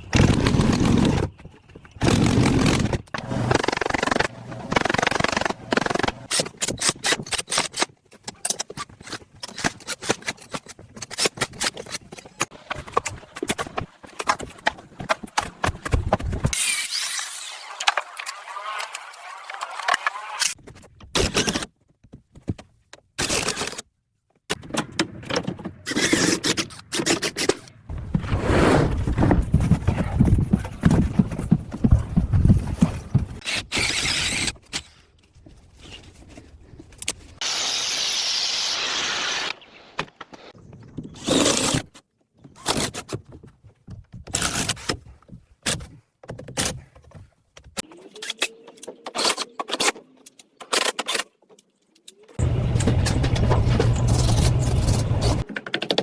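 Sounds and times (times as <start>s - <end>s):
rough heavy scraping: 27.9s - 33.4s, 52.4s - 55.5s.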